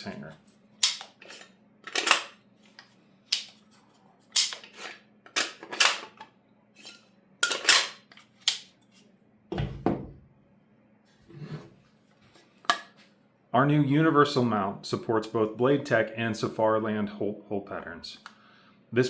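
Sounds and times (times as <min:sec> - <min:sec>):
hard parts clacking together: 0:00.8 - 0:02.4, 0:04.4 - 0:06.2, 0:07.4 - 0:08.6.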